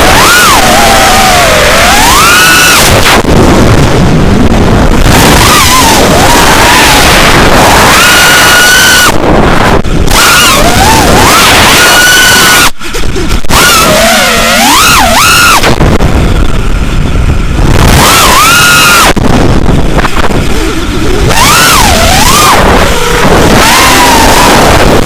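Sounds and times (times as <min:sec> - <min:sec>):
model plane motor whining: 0:00.0 - 0:02.1, 0:13.5 - 0:15.7, 0:20.4 - 0:24.7
wind rush on microphone: 0:00.0 - 0:25.0.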